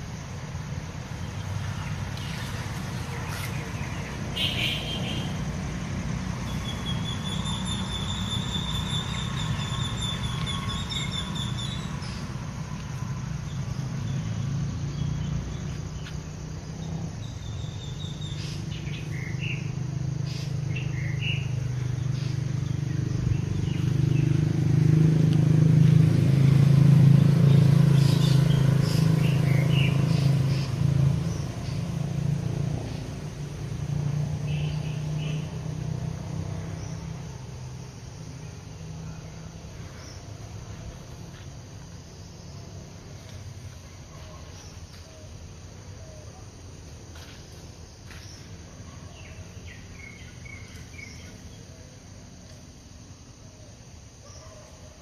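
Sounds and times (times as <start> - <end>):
small birds chirping: 1.1 - 5.5, 6.4 - 25.0, 27.4 - 32.1, 34.4 - 35.7, 47.2 - 52.2.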